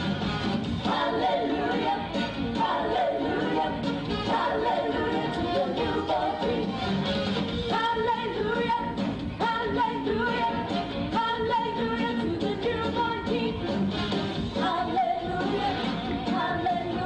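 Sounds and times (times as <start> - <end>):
voices singing long notes: 0.8 - 6.7.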